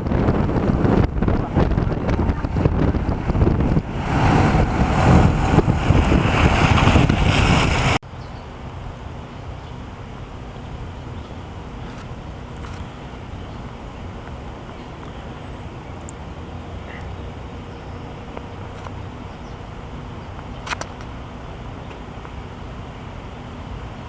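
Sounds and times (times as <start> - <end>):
strong wind buffeting microphone: 0.0 - 8.0
heavy low rumble: 0.0 - 24.0.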